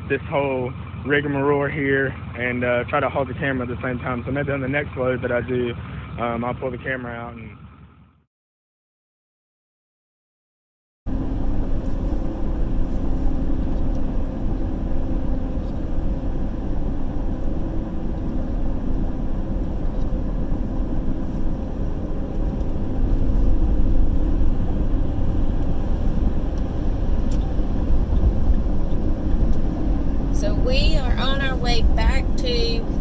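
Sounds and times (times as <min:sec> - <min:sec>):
road rumble: 0:00.0 - 0:08.2, 0:11.1 - 0:33.0
vehicle engine drone: 0:00.0 - 0:08.2, 0:11.1 - 0:33.0.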